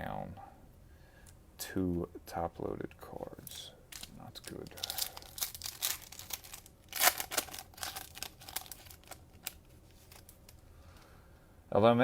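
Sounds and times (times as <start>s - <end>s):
cellophane wrapper tearing and crinkling: 3.9s - 10.6s.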